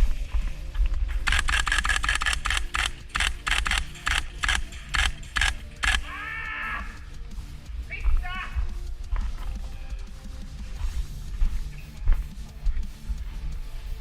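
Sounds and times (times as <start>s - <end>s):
airsoft rifle shots: 1.3s - 6.2s.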